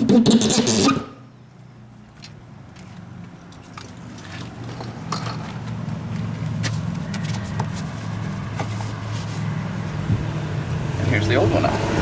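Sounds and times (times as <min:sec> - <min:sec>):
vehicle engine hum: 0:00.7 - 0:12.0.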